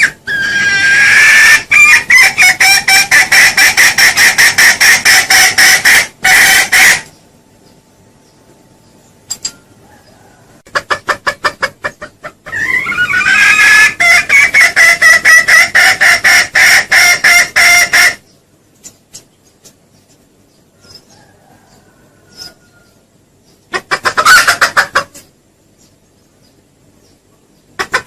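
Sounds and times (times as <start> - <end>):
junglefowl clucking: 0.0 - 7.2, 9.8 - 23.0, 23.6 - 25.4, 27.7 - 28.0.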